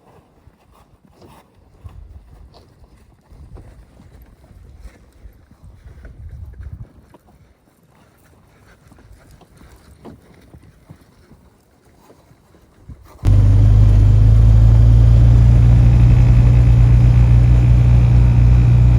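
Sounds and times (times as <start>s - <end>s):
engine running: 13.3s - 18.9s.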